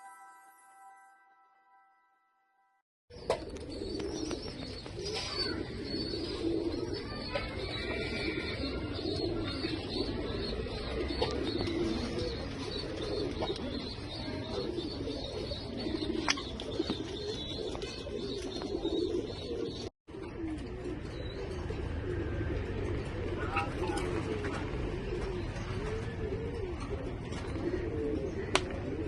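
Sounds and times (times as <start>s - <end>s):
pigeons cooing: 3.1s - 29.0s.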